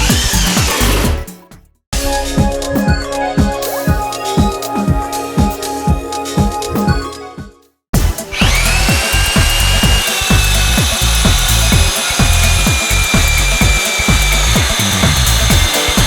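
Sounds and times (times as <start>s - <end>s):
power drill whining: 0.0s - 0.8s, 8.3s - 16.0s
grinding cutting noise: 0.0s - 1.2s, 8.0s - 16.0s.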